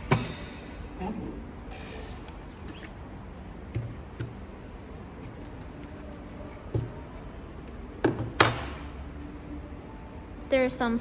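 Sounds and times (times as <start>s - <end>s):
low steady hum: 0.0s - 11.0s.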